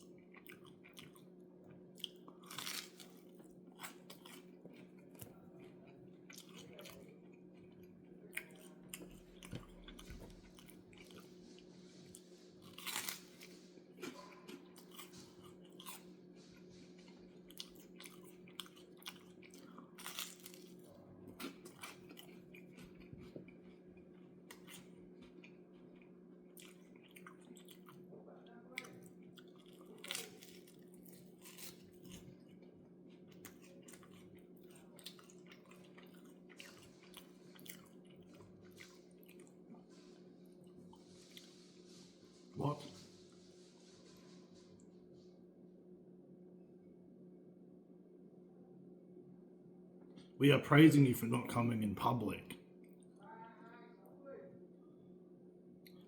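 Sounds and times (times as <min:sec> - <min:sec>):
chewing and crunching toast: 0:00.0 - 0:41.6, 0:55.8 - 0:56.0
faint steady hum: 0:00.0 - 0:56.0.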